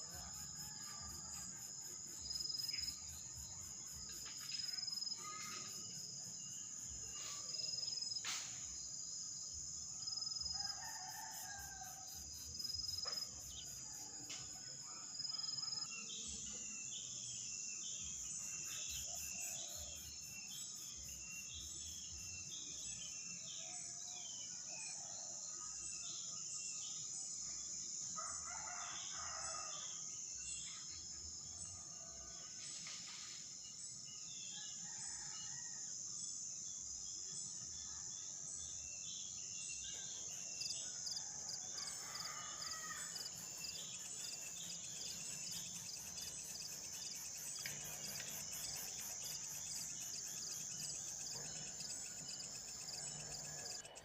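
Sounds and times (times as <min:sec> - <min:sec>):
insects chirring: 0:40.3 - 0:54.0
rooster crowing: 0:41.8 - 0:43.3.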